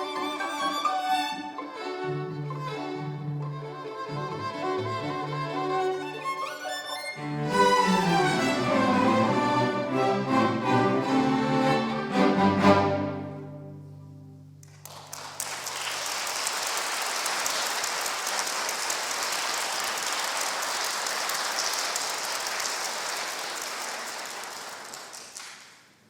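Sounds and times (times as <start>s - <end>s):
string orchestra chord: 0.0s - 14.6s
audience applauding: 14.6s - 26.0s.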